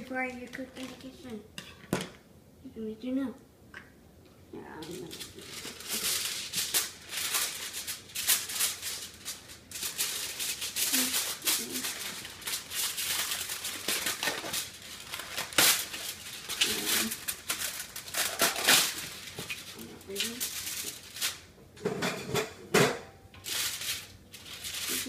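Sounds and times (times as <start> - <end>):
plastic packaging crinkling: 0.3 - 1.4, 4.8 - 21.5, 23.4 - 25.0.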